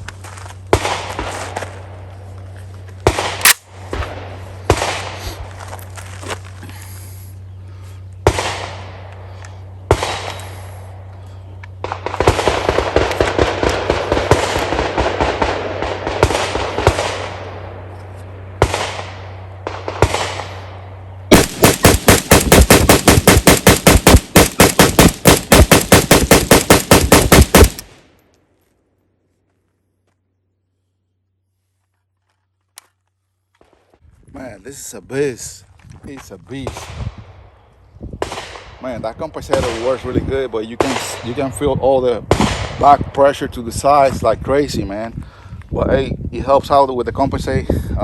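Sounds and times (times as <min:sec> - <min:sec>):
rapid rifle fire: 0:08.3 - 0:09.0, 0:09.9 - 0:10.4, 0:11.8 - 0:17.5, 0:18.6 - 0:20.6, 0:21.3 - 0:28.0
rifle gunshots: 0:08.3 - 0:09.0, 0:09.9 - 0:10.4, 0:11.8 - 0:17.6, 0:18.6 - 0:20.7, 0:21.3 - 0:28.1, 0:40.8 - 0:41.4.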